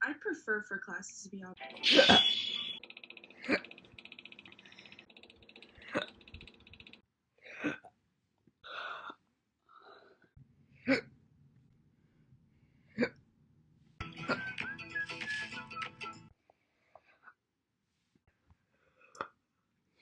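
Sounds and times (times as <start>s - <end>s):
music: 1.6s - 2.8s, 14.0s - 16.3s.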